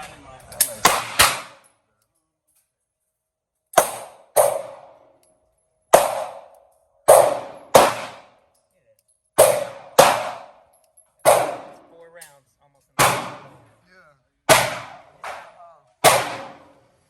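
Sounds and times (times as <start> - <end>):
pistol shots with echo: 0.6 - 1.6, 3.8 - 5.0, 5.9 - 8.4, 9.4 - 10.6, 11.2 - 11.9, 13.0 - 13.6, 14.5 - 16.8.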